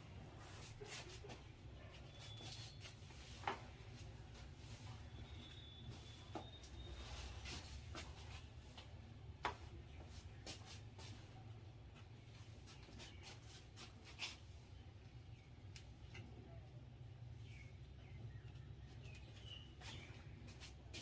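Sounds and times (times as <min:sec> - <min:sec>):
fingers rubbing through hair: 0:00.3 - 0:08.6, 0:12.5 - 0:14.6.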